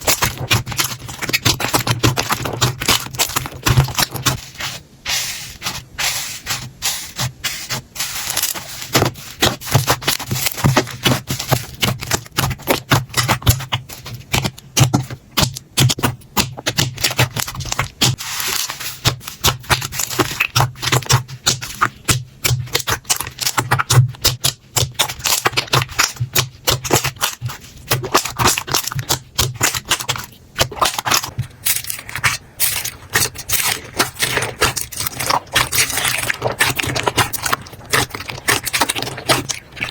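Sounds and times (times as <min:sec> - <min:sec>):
slime sticky pops and crackles: 0:19.0 - 0:31.4.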